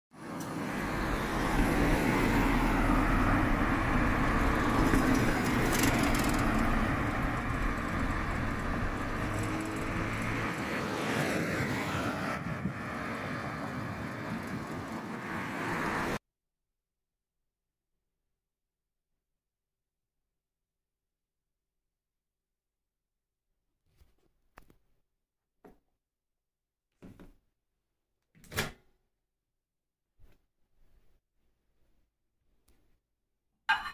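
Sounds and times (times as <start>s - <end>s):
road vehicle rumble: 0.2s - 16.2s.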